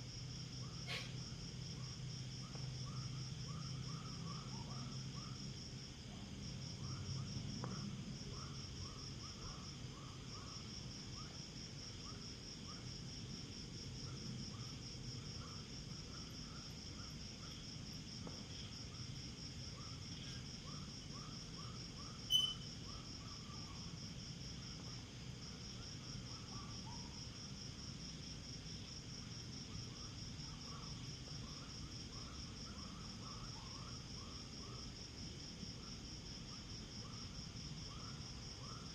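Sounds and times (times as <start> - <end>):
crickets trilling: 0.0 - 38.9
short lower insect chirps: 22.2 - 22.9.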